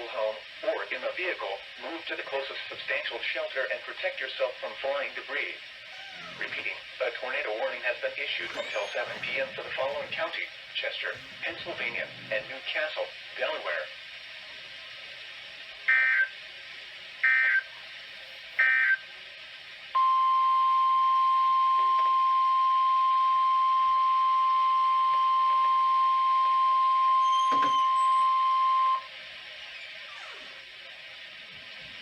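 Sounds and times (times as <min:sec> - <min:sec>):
receiver hiss: 0:00.0 - 0:29.6
steady warning alarm tone: 0:20.0 - 0:29.1.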